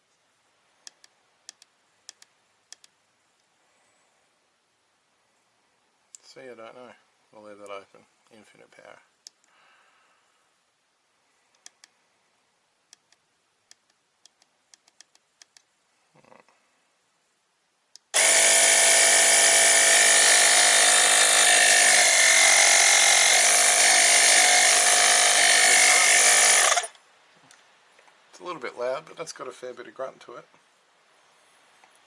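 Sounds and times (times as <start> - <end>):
faint clicks: 11.5 - 12.0, 12.9 - 15.7
electric compressor whining: 18.2 - 27.0.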